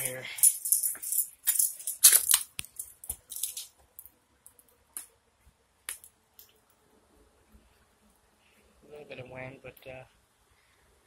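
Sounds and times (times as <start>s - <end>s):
keys jangling: 0.0s - 3.7s.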